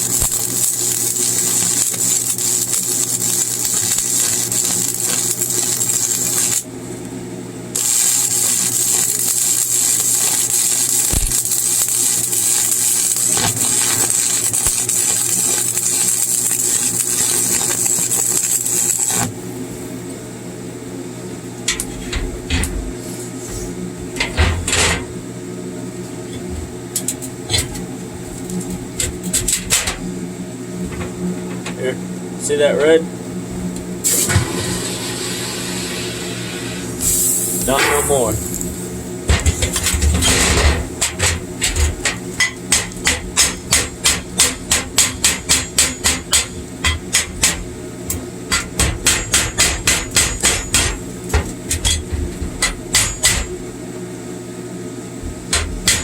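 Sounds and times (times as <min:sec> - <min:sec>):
welding arc crackling: 0:00.0 - 0:20.2, 0:33.3 - 0:53.7.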